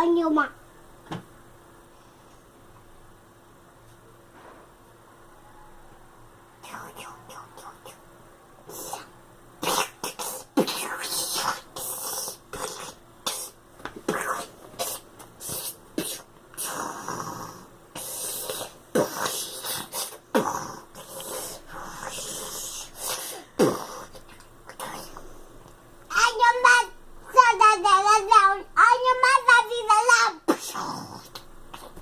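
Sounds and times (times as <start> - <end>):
boy making mouth sound effects: 8.7 - 17.4, 18.0 - 25.2, 30.1 - 32.0.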